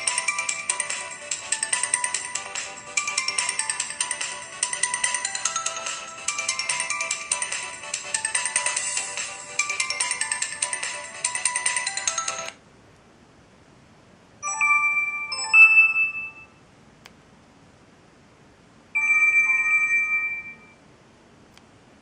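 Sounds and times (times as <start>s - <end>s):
polyphonic ringtone melody: 0.0s - 12.6s, 14.4s - 16.5s, 19.0s - 20.8s
short ringtone chime: 14.4s - 16.6s, 19.0s - 20.8s
faint click: 17.0s - 17.2s.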